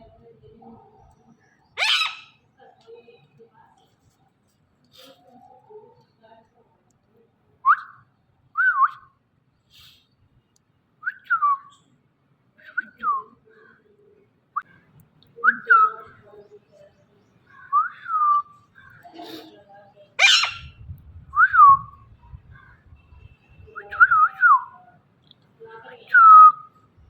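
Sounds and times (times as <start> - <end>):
parrot whistling: 1.8 - 2.3, 20.2 - 20.7.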